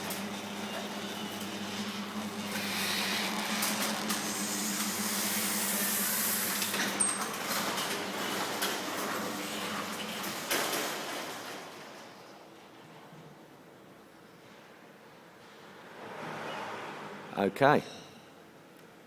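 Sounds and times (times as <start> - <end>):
garage door opener motor humming: 0.0 - 12.9
garage door rolling on track: 0.0 - 13.8.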